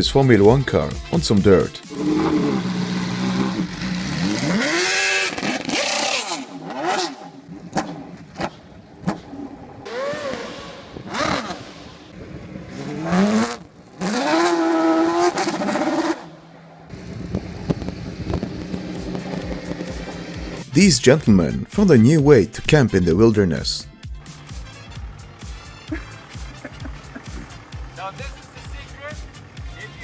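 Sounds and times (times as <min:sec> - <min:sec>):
racing car engine revving: 0:01.8 - 0:20.7.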